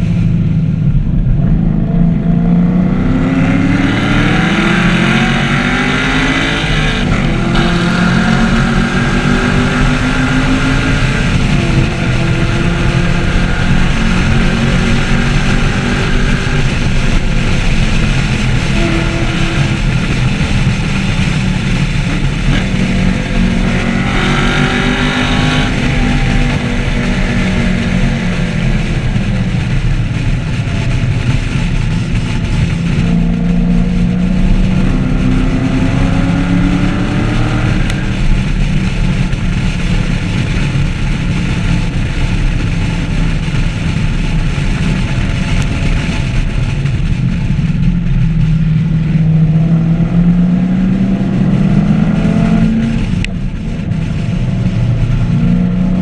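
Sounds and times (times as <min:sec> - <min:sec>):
car engine revving: 0:00.0 - 0:56.0
road and wind noise: 0:00.0 - 0:56.0.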